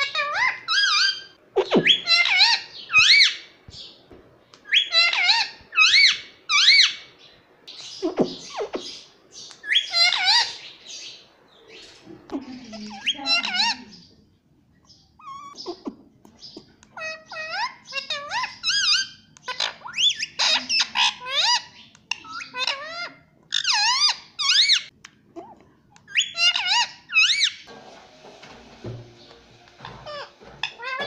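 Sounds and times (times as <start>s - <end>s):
parrot warbling calls: 0.0s - 3.5s, 4.7s - 7.0s, 9.6s - 10.6s.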